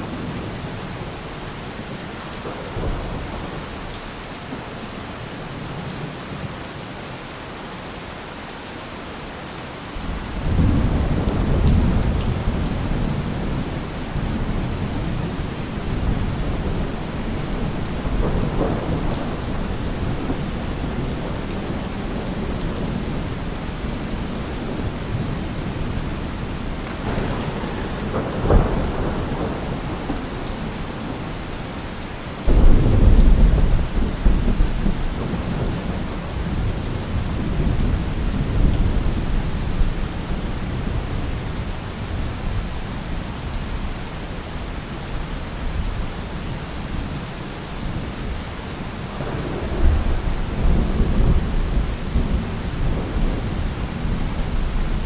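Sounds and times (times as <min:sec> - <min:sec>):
heavy rain: 0:00.0 - 0:55.0
rolling thunder: 0:10.0 - 0:31.4, 0:32.4 - 0:42.6, 0:49.1 - 0:55.0.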